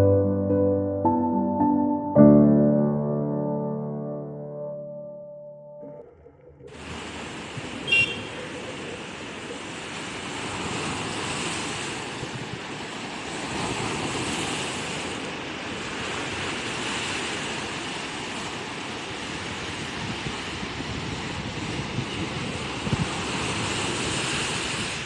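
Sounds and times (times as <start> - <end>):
underwater rushing water: 5.9 - 25.0.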